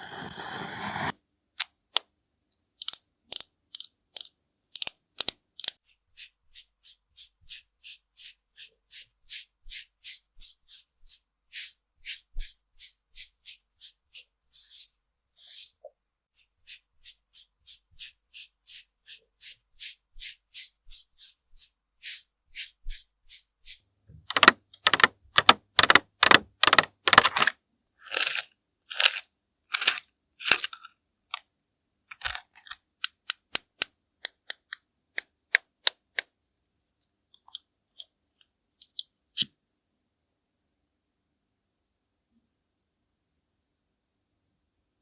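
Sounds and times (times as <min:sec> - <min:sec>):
sharp ticks: 0:02.8 - 0:05.8.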